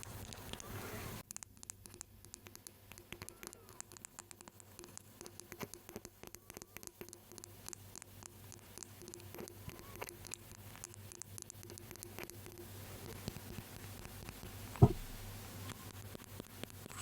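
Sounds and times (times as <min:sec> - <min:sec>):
light taps on a hard surface: 0:14.8 - 0:15.3
dense rustling: 0:14.8 - 0:15.4.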